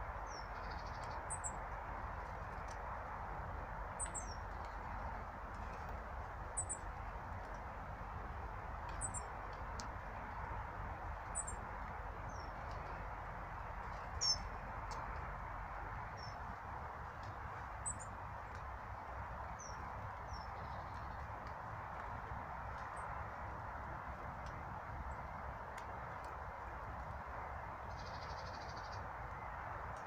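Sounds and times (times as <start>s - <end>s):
small birds high calls: 0.2s - 1.6s, 3.9s - 5.0s, 6.5s - 7.1s, 8.9s - 9.4s, 13.8s - 15.2s, 27.8s - 29.6s.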